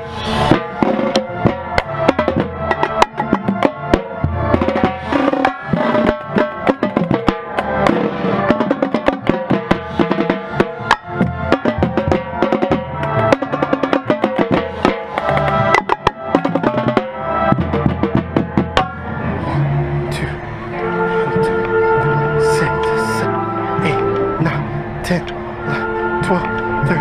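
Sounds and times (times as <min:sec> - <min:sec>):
sharp drum strokes: 0:00.0 - 0:19.1
marching band playing: 0:00.0 - 0:27.0.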